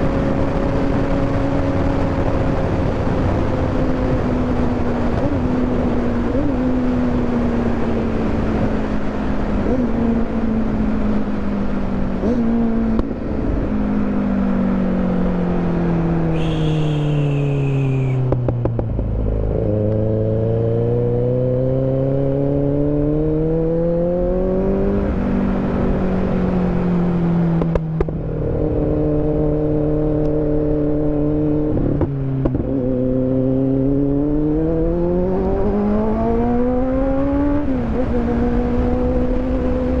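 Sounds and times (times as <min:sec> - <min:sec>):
motorcycle engine while riding: 0:00.0 - 0:40.0
brief high whine: 0:16.3 - 0:18.2.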